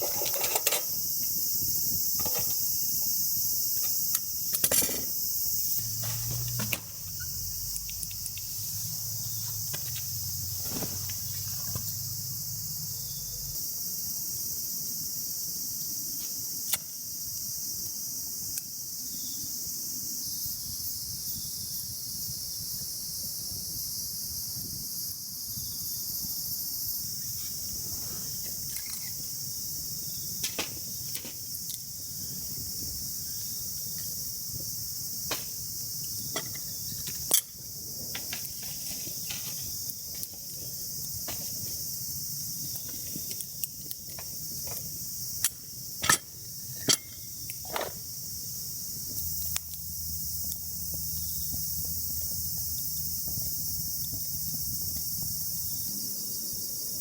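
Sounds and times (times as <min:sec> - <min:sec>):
insect chorus chirring: 0:00.0 - 0:57.0.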